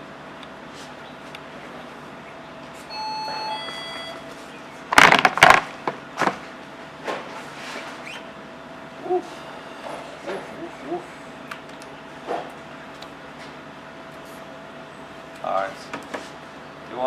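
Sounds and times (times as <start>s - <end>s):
two-tone electronic chime: 2.9s - 4.3s
loud sharp knocks: 4.9s - 6.4s.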